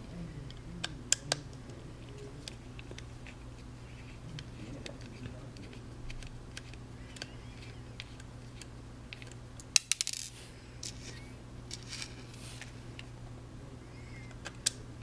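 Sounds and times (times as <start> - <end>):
small metal parts clicking: 9.2 - 11.1.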